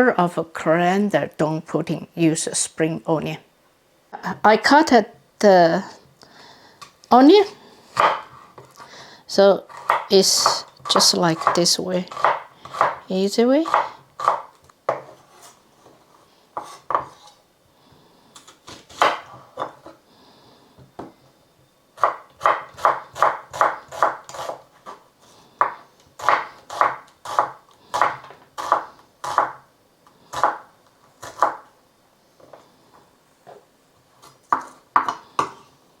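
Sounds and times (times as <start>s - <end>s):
knife chopping on cutting board: 8.0s - 8.4s, 9.7s - 13.0s, 13.7s - 15.2s, 22.0s - 24.6s, 25.6s - 29.6s.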